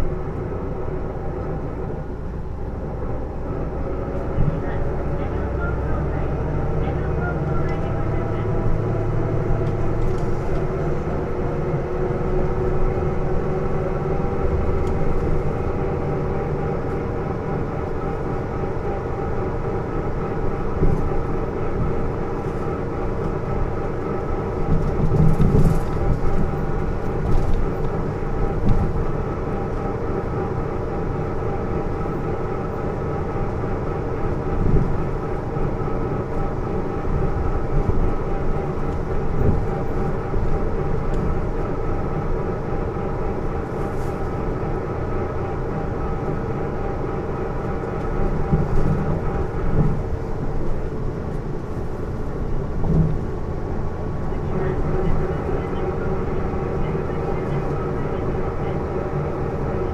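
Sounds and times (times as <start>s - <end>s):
bus engine running: 0.0s - 59.9s
drivetrain whine: 0.0s - 59.9s.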